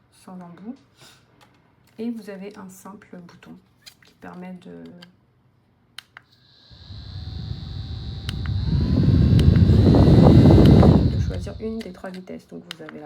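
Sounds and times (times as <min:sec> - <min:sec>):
small fan motor whine: 0:06.5 - 0:12.0
airflow rumble on microphone: 0:06.8 - 0:12.0.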